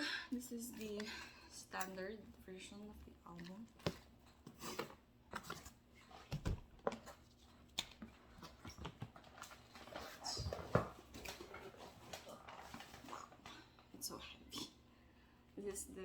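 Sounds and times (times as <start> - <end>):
packaging clicks and rustles: 4.8 - 13.8.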